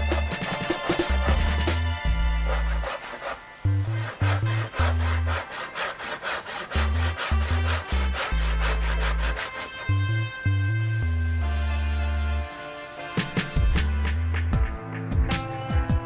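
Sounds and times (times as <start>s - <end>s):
hand saw cutting wood: 0.0s - 10.4s
electronic music with heavy bass: 13.2s - 16.0s.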